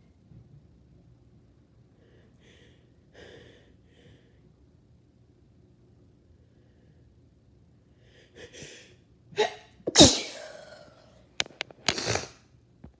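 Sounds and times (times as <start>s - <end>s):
breathy intake: 9.4s - 11.0s
person sneezing: 9.4s - 11.0s, 11.9s - 12.3s.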